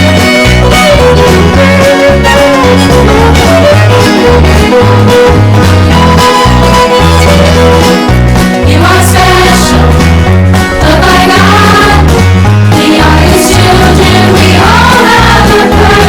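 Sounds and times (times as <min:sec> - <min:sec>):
bouncing bass line: 0:00.0 - 0:16.0
fiddle: 0:00.0 - 0:16.0
plucked guitar: 0:00.0 - 0:16.0
upbeat instrumental music: 0:00.0 - 0:16.0.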